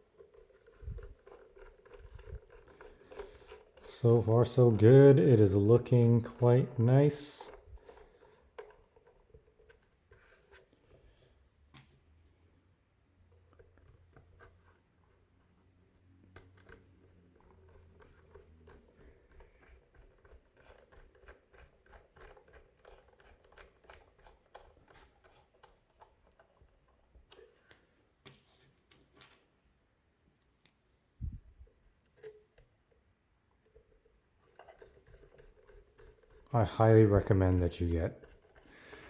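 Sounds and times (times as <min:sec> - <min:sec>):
screwdriver clicking and scraping: 0:00.0 - 0:10.7, 0:16.3 - 0:27.7, 0:33.6 - 0:39.0.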